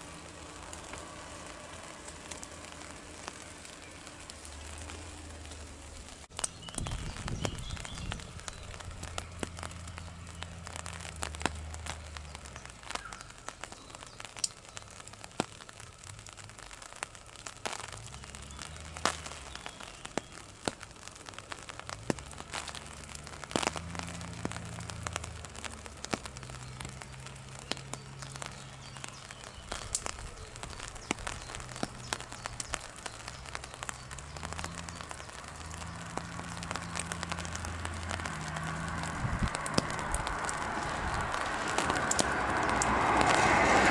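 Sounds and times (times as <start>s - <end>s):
raindrops tapping on umbrella: 0.0s - 43.9s.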